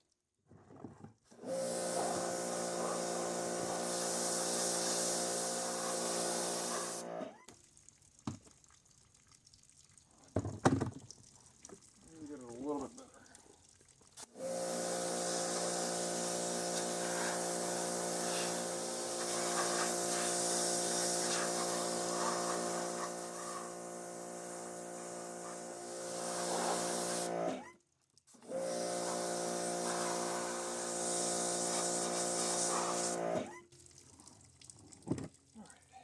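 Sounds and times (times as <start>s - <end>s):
pressure washer motor hum: 1.4s - 7.4s, 14.4s - 27.6s, 28.5s - 33.5s
water spray hissing: 1.5s - 7.2s, 14.2s - 27.6s, 28.5s - 33.5s.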